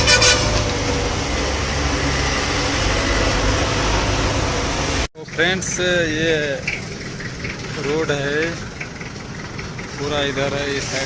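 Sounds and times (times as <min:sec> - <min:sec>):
car horn toot: 0:00.0 - 0:00.8
vehicle engine and road noise: 0:00.0 - 0:11.0.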